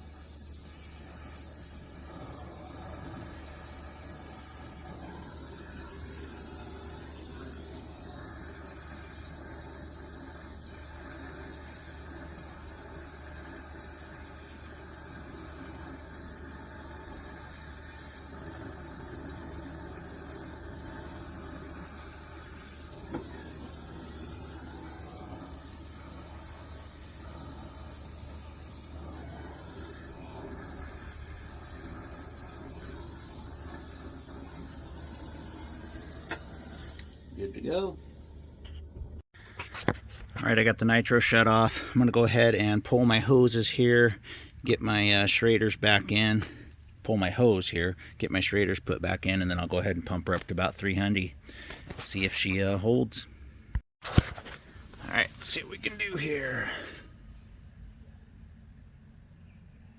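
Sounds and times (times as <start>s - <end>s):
torch gas hiss: 0.0s - 38.7s.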